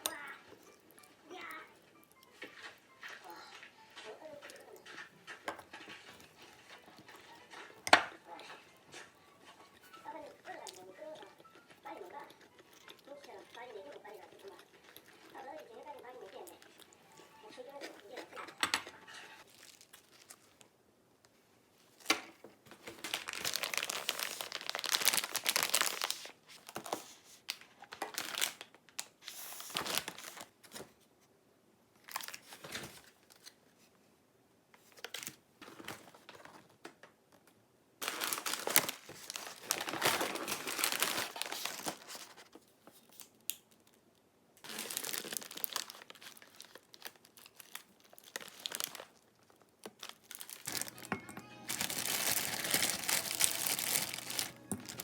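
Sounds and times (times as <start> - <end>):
packaging crinkling and tearing: 19.4 - 20.7, 22.7 - 30.8, 32.0 - 33.6, 34.9 - 36.5, 38.0 - 44.0, 44.6 - 55.0.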